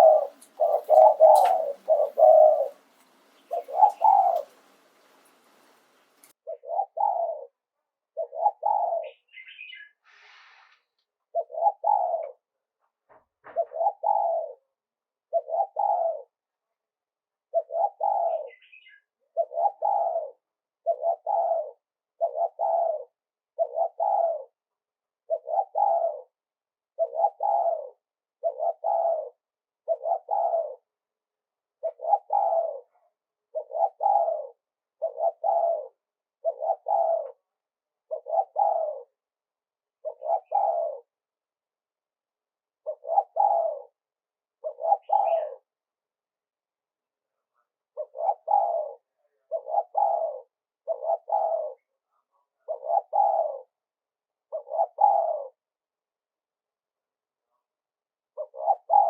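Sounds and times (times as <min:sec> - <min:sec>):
dove cooing: 0:00.0 - 0:07.6, 0:08.2 - 0:09.9, 0:11.3 - 0:12.4, 0:13.4 - 0:14.7, 0:15.3 - 0:16.4, 0:17.5 - 0:24.6, 0:25.3 - 0:26.4, 0:27.0 - 0:30.9, 0:31.8 - 0:37.4, 0:38.1 - 0:39.2, 0:40.0 - 0:41.1, 0:42.8 - 0:44.0, 0:44.6 - 0:45.6, 0:48.0 - 0:51.8, 0:52.6 - 0:53.7, 0:54.5 - 0:55.6, 0:58.4 - 0:59.0.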